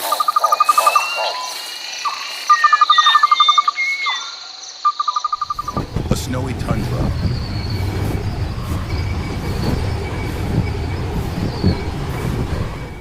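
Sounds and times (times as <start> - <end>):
high-pitched insect drone: 0.0 - 5.8
birds calling: 0.6 - 12.9
sliding whistled bird notes: 5.3 - 13.0.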